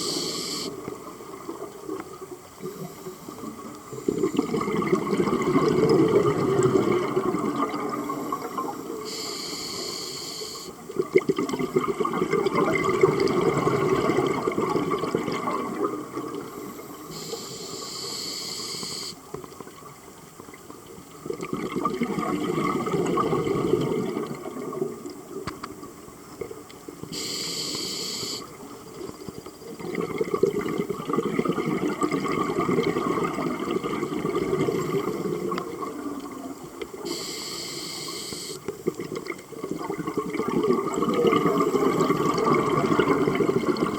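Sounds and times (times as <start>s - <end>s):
regulator hissing inhales: 0.0s - 0.8s, 9.0s - 10.8s, 16.6s - 19.2s, 27.1s - 28.6s, 37.1s - 38.6s.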